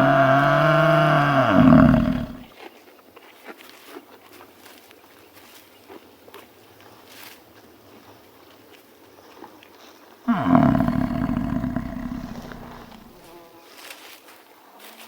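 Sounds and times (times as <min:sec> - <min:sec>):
large animal roaring: 0:00.0 - 0:02.5, 0:10.3 - 0:13.2.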